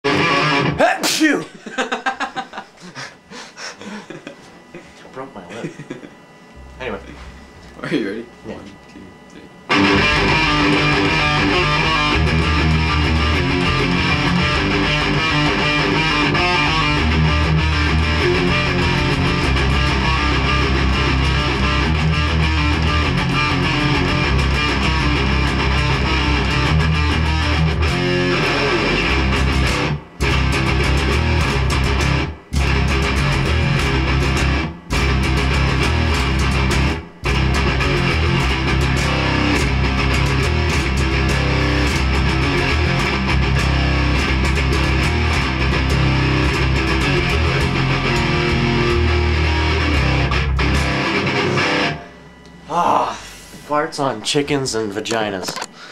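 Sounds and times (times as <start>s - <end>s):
loud electric guitar music: 0.0s - 2.6s, 9.6s - 52.8s
bass guitar: 9.7s - 53.3s.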